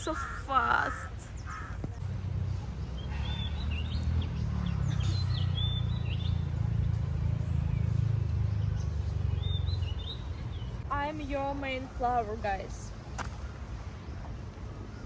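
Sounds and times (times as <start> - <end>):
small birds chirping: 2.8 - 10.9.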